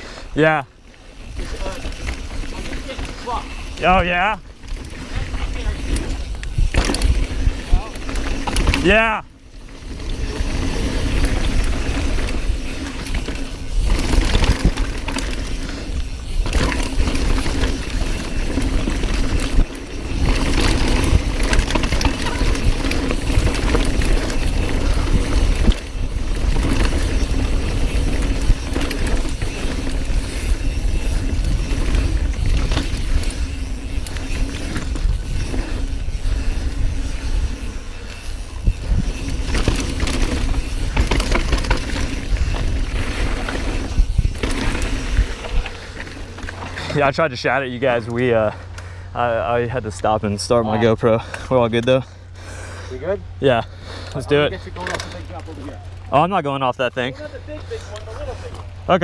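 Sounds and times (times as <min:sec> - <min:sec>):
wind buffeting microphone: 0:01.2 - 0:46.4
bike rattling and knocking: 0:01.2 - 0:52.4, 0:53.5 - 0:59.0.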